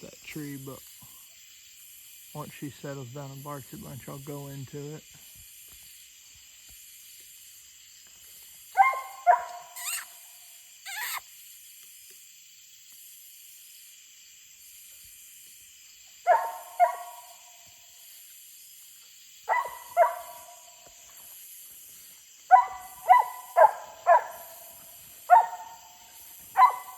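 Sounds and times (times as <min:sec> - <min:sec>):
high-pitched hiss: 0:00.0 - 0:26.9
distant dog barking: 0:08.8 - 0:10.1, 0:16.3 - 0:17.5, 0:19.5 - 0:20.8, 0:22.5 - 0:26.9.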